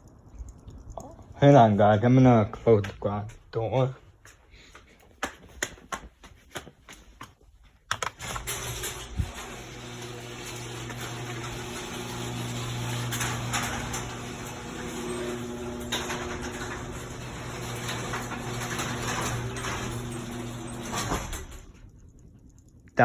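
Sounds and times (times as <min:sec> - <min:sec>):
garage door opener click: 0:08.1 - 0:21.8
garage door motor humming: 0:08.2 - 0:22.2.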